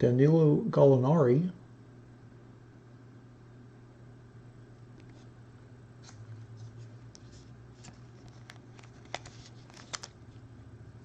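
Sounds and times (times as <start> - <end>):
cards scraping and clicking: 6.0 - 10.4.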